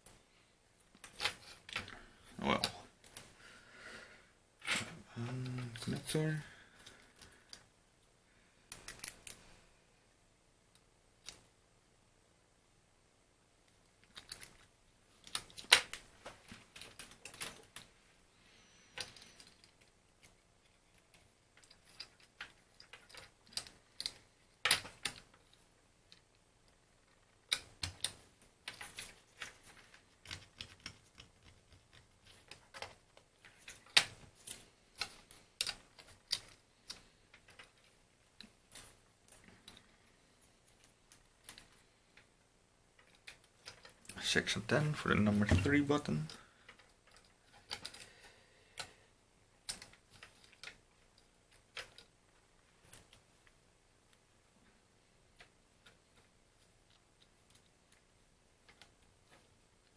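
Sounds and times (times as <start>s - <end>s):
plastic parts clicking: 27.4s - 39.9s, 43.0s - 44.2s, 45.4s - 49.0s, 49.6s - 52.2s.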